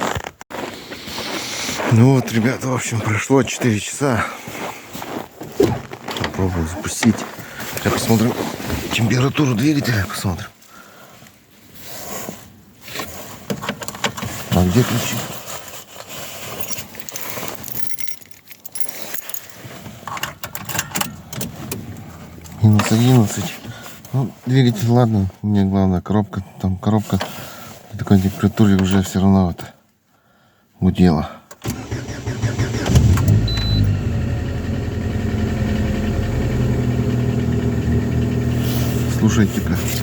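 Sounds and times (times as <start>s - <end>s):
car keys jangling: 16.5s - 23.4s
car engine idling: 20.4s - 23.7s, 31.7s - 40.0s.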